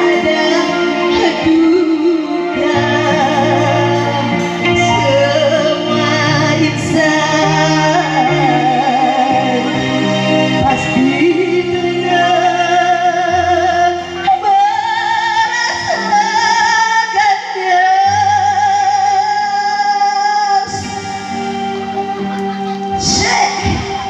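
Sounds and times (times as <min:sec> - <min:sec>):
steady bass line: 0:00.0 - 0:16.3
person singing with vibrato: 0:00.0 - 0:24.0.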